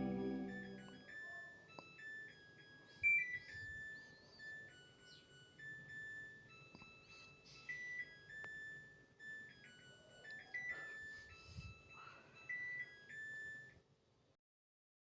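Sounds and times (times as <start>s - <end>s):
beeped electronic melody: 0.0s - 1.0s.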